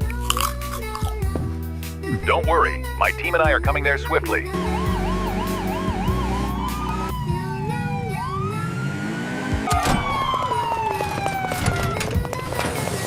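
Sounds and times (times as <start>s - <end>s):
police siren wailing: 4.5s - 12.8s.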